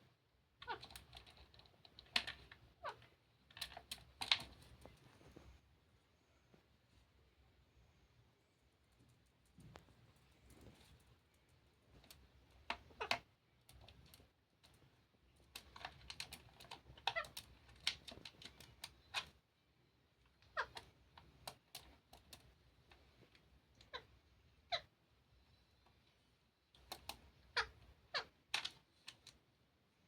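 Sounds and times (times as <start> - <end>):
parrot calls: 20.4 - 20.9, 24.7 - 24.9, 27.4 - 28.4.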